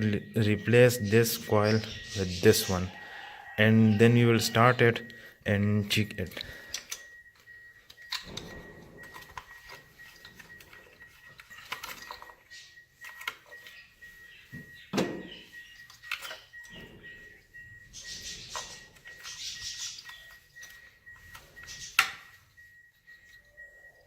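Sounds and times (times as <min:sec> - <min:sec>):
ignition coils clinking and knocking: 0:06.4 - 0:13.8, 0:14.4 - 0:22.4.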